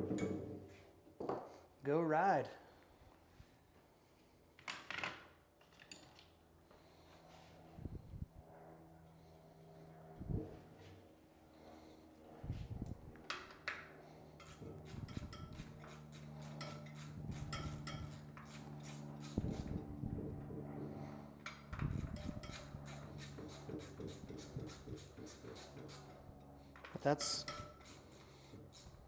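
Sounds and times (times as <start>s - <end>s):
metallic clinks of hand tools: 14.4s - 19.1s, 21.9s - 24.6s, 26.9s - 29.0s.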